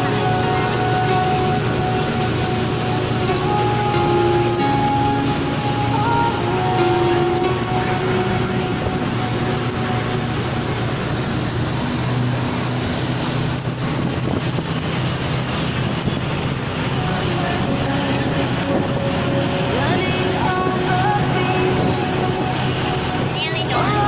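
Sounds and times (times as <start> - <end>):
boat engine humming: 0.0 - 24.0
rushing water from moving boat: 0.0 - 24.0.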